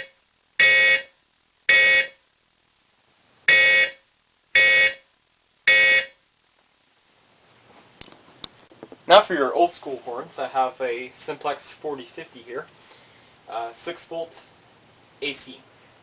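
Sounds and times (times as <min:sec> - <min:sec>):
fire alarm horn blasts: 0:00.0 - 0:02.2, 0:03.5 - 0:04.0, 0:04.6 - 0:05.1, 0:05.7 - 0:06.2.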